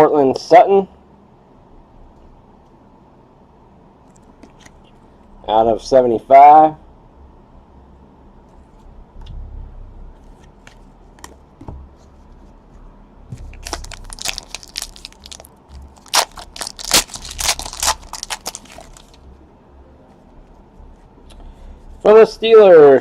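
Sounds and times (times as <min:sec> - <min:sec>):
plastic packaging crinkling: 0:13.4 - 0:19.3.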